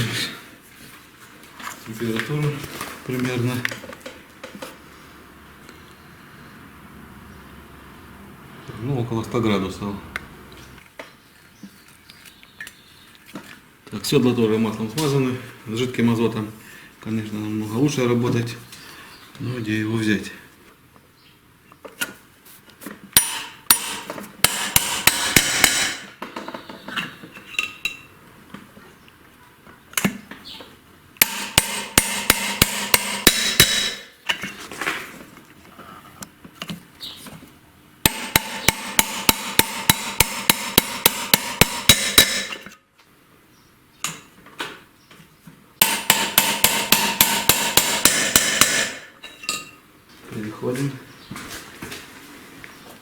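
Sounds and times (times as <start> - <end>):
ringing metal-on-metal hammer blows: 31.2 - 34.1, 38.1 - 42.6, 45.8 - 49.1.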